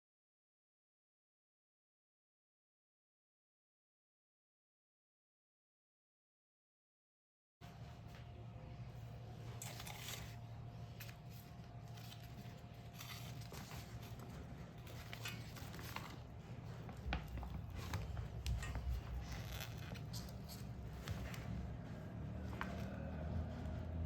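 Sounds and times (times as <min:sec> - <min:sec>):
rustles scrapes and clicks: 0:09.4 - 0:21.8.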